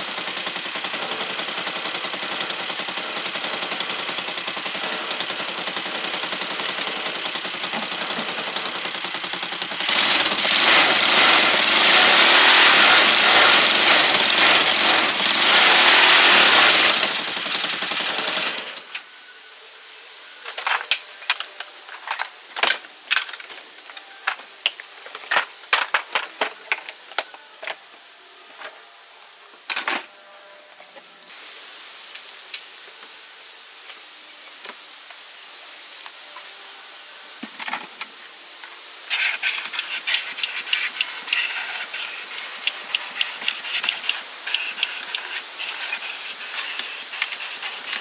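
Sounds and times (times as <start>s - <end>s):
machine running with fast rattle: 0.0s - 19.0s, 39.1s - 48.0s.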